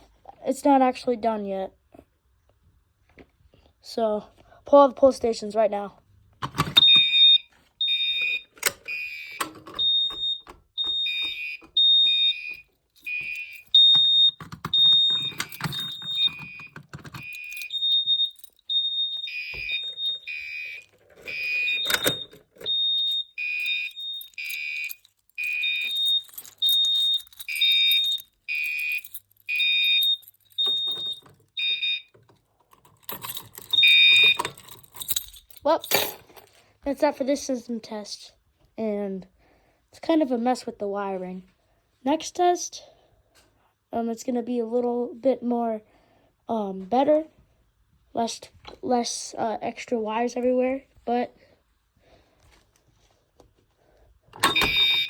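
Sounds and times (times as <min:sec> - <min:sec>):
fire alarm horns pulsing: 0:06.8 - 0:32.2, 0:54.4 - 0:55.0
pull stations clicking and clacking: 0:08.2 - 0:18.5, 0:19.6 - 0:36.2, 0:54.4 - 0:55.0.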